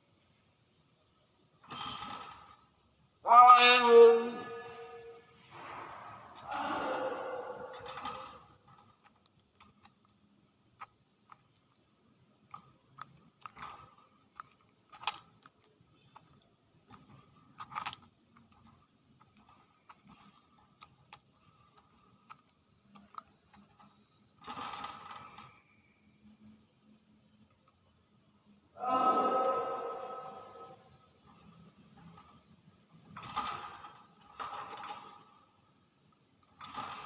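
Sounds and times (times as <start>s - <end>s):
bird crunching food: 9.0s - 23.9s.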